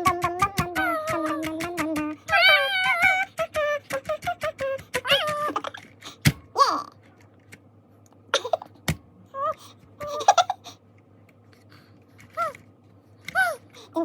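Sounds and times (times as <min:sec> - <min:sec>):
baby giggling and babbling: 0:00.8 - 0:07.0, 0:08.3 - 0:08.8, 0:09.4 - 0:10.8, 0:13.3 - 0:14.0.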